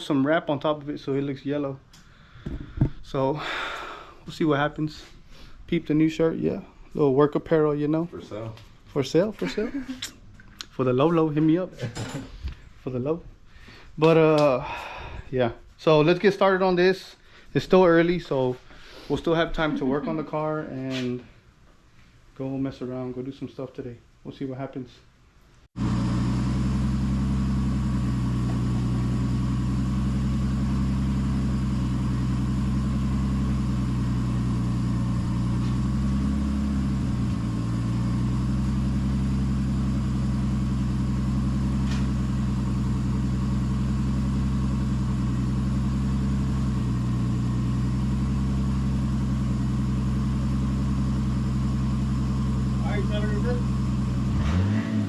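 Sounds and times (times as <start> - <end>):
car engine idling: 25.8 - 55.0.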